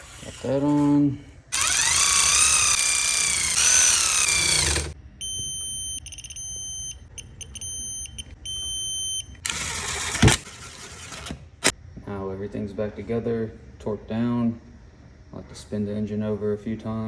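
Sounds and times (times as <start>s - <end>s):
cordless power tool whining: 1.5s - 5.0s.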